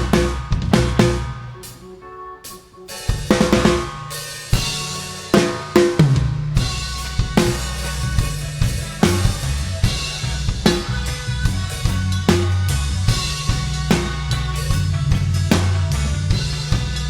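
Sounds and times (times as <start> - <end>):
drum kit hits: 0.0 - 1.6, 3.0 - 17.0
low bass line: 0.0 - 1.6, 6.0 - 17.0
reggae band playing: 0.0 - 17.0.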